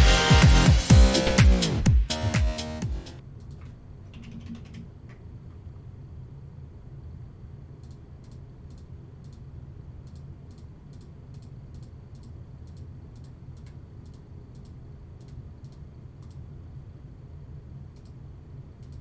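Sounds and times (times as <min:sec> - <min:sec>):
steady low hum: 0:00.0 - 0:19.0
computer mouse clicks: 0:03.4 - 0:05.2, 0:07.8 - 0:16.5, 0:17.9 - 0:18.2, 0:18.8 - 0:19.0.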